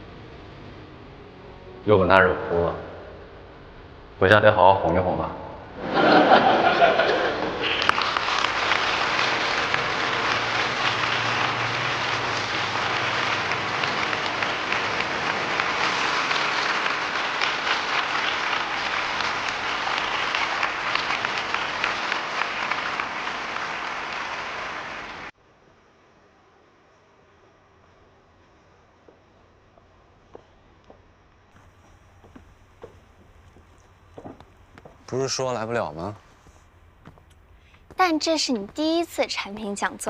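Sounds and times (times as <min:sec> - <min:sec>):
audience applauding: 0:05.8 - 0:25.3.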